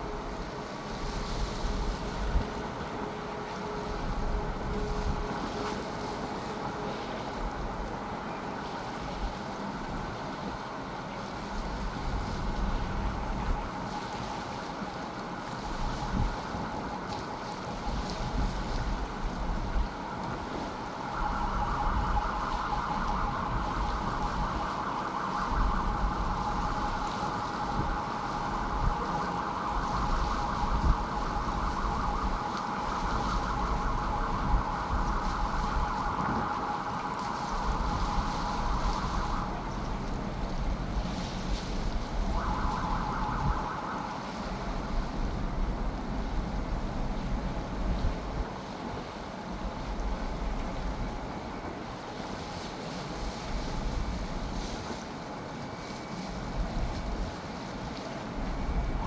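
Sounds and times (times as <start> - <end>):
warbling siren-like tone: 0.0 - 10.7, 11.3 - 45.8
wind buffeting microphone: 0.0 - 59.0.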